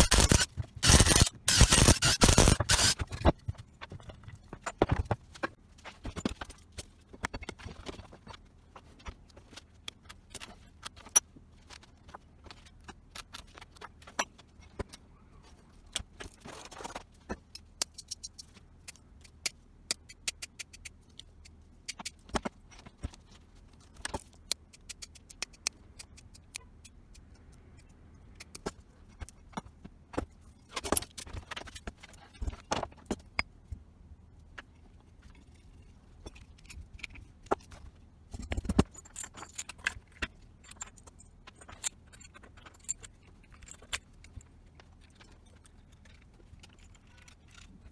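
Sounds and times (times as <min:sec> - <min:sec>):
metal parts and tools clinking: 0:00.0 - 0:03.3.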